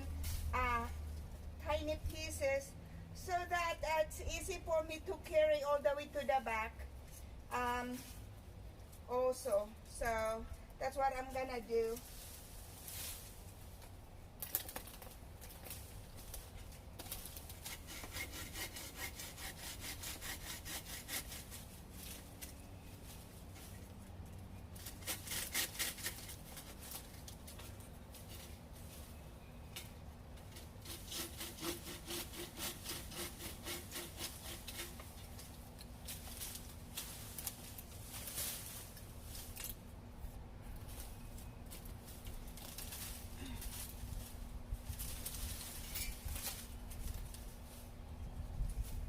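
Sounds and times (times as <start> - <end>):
hand saw cutting branch: 17.0 - 22.5, 24.8 - 27.1, 30.4 - 39.8.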